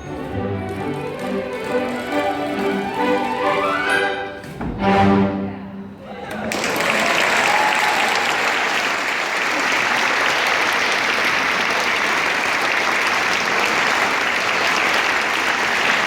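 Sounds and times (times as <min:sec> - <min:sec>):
audience applauding: 0:06.3 - 0:16.0.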